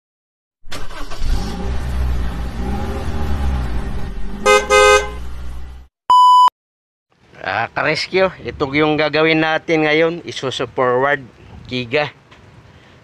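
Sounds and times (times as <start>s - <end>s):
vehicle engine rumbling: 0.7s - 5.9s
horn honking: 4.4s - 5.4s
electronic beep: 6.1s - 6.5s.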